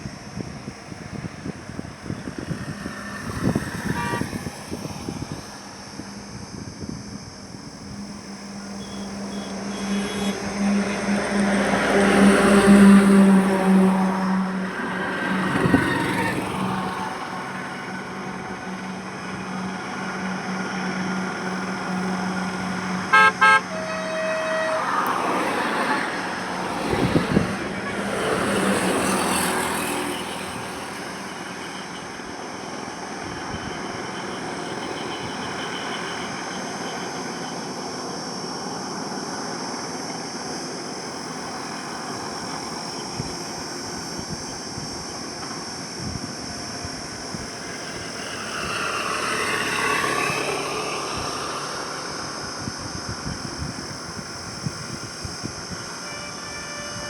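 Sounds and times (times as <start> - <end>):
highway traffic rumble: 0.0 - 57.0
vehicles passing close: 0.0 - 57.0
vehicle horn beeping: 3.4 - 4.7, 8.8 - 13.1, 22.9 - 26.2, 27.0 - 29.4, 55.7 - 57.0.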